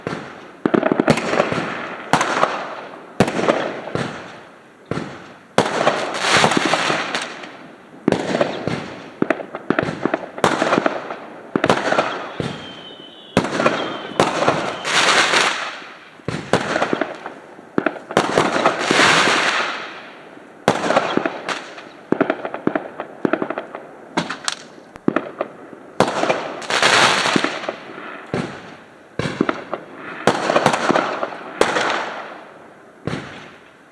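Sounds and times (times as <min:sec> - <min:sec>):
fireworks bangs and crackle: 0:00.0 - 0:33.9
firework whistle: 0:11.6 - 0:17.0.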